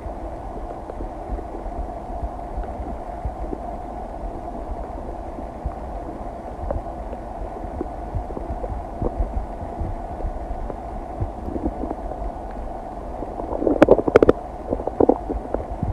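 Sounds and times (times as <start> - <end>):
steady hum: 0.0 - 15.9
stomach pops and thumps: 13.5 - 15.9.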